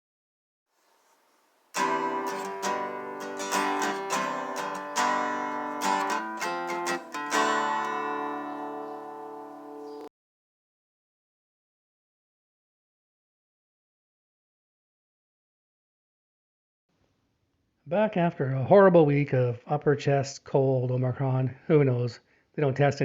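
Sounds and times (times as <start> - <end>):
strummed guitar chords: 1.8 - 10.1.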